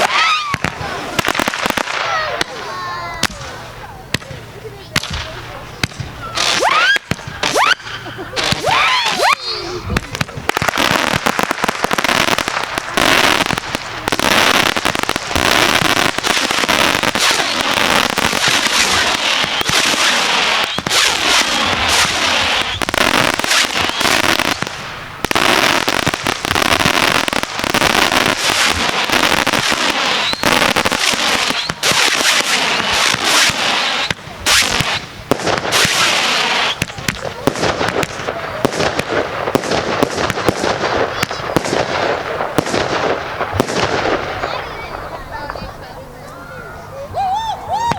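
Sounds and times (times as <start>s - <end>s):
fireworks crackling and popping: 0.0s - 47.9s.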